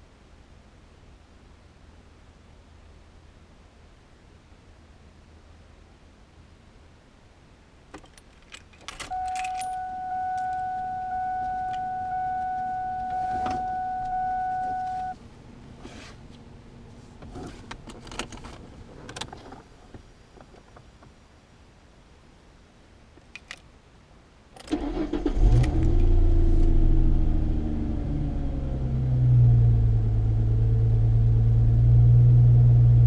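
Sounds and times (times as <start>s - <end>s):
car keys jangling: 8.0s - 15.2s
electronic warning tone: 9.1s - 15.2s.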